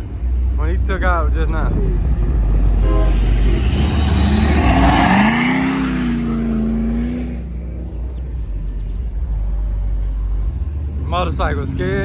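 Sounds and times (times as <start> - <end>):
car engine accelerating past: 2.0 - 12.0
loud roar: 2.7 - 7.5.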